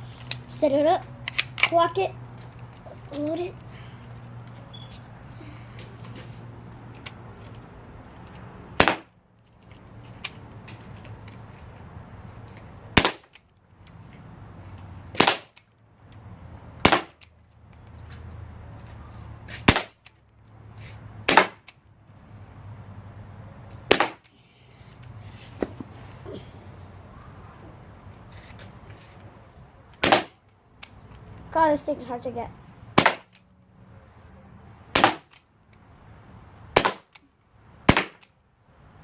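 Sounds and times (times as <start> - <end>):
bb gun shots popping: 8.8 - 9.1, 13.0 - 13.4, 15.2 - 15.6, 16.8 - 17.3, 19.6 - 20.1, 21.3 - 21.8, 23.9 - 24.3, 30.0 - 30.4, 33.0 - 33.4, 34.9 - 35.4, 36.8 - 37.2, 37.9 - 38.2.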